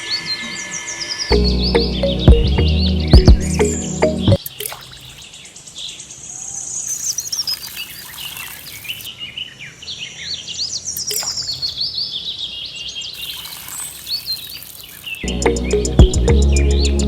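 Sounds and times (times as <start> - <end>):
small birds chirping: 0.0 - 17.0
high hiss: 13.2 - 15.3.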